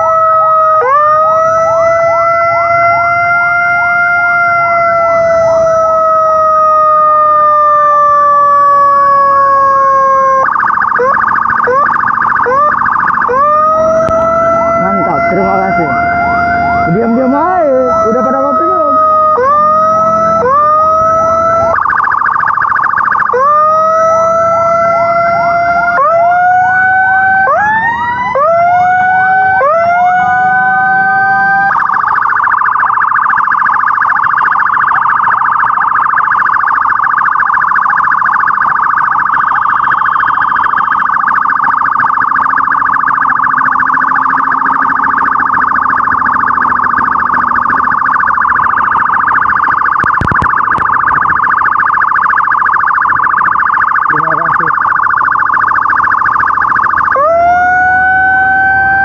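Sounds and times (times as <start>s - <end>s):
electronic emergency siren: 0.0s - 59.0s.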